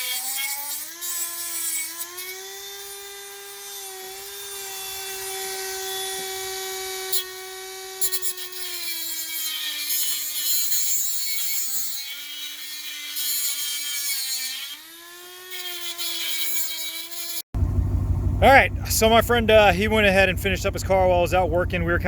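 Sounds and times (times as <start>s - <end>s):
rotary tool whining: 0.0s - 18.4s
gritty grinding noise: 18.4s - 22.0s.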